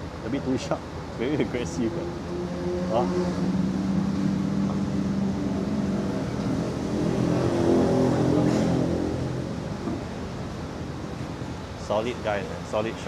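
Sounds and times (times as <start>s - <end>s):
motorcycle engine revving: 1.3s - 11.5s.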